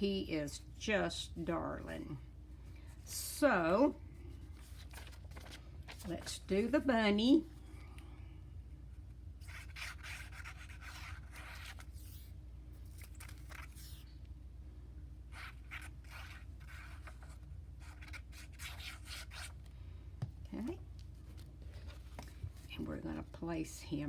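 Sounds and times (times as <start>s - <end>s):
low steady hum: 0.0s - 24.0s
paper rustling and scraping: 4.5s - 6.6s, 9.4s - 14.0s.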